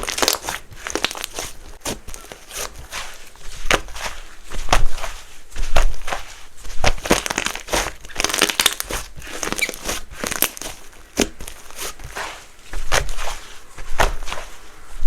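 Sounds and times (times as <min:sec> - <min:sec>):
slime crackling and popping: 0:00.0 - 0:03.0, 0:06.8 - 0:12.3.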